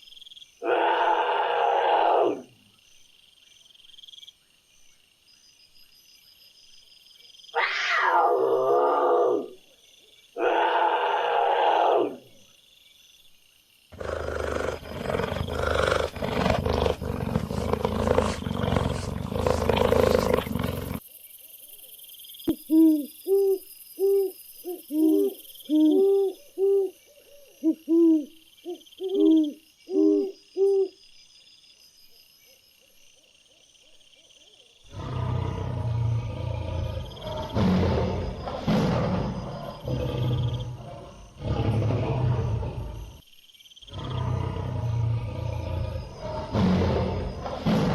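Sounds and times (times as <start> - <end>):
loud rough animal calling: 0.6 - 2.5, 10.4 - 12.2, 14.0 - 21.0.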